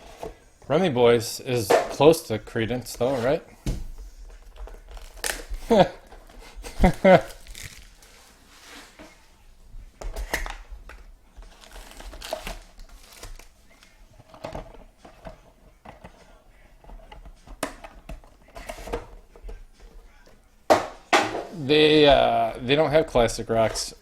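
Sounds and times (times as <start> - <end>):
packaging crinkling: 4.6 - 5.7, 6.8 - 8.4, 11.5 - 13.9.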